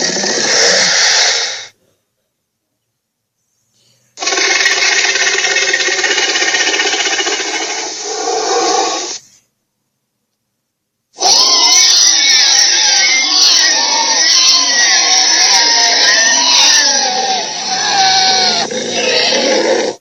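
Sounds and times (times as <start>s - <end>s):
harsh creature call: 0.0s - 1.8s, 4.2s - 9.2s, 11.2s - 20.0s.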